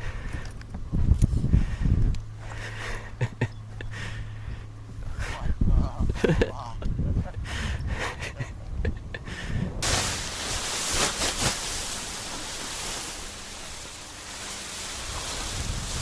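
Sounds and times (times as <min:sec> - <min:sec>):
wind buffeting microphone: 0:00.3 - 0:02.4, 0:04.5 - 0:11.4, 0:12.7 - 0:16.0
steady rushing hiss: 0:09.8 - 0:16.0.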